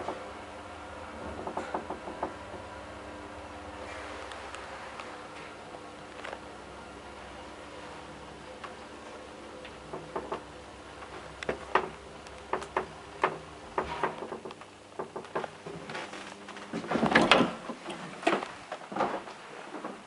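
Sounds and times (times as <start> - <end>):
elevator machinery clicking and knocking: 0.0 - 0.3, 1.2 - 2.8, 9.6 - 15.9
low machinery hum: 0.0 - 20.0.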